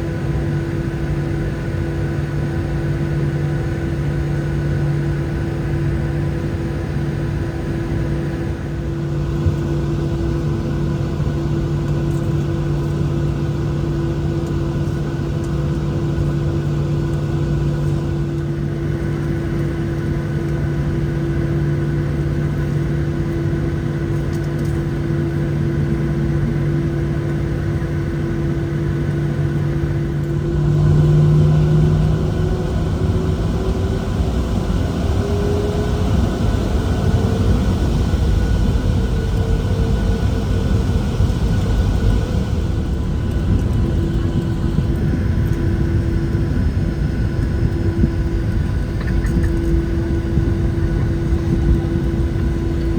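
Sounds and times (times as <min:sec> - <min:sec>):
jet engine hum and whine: 0:00.0 - 0:52.9
low rumble: 0:29.5 - 0:52.9.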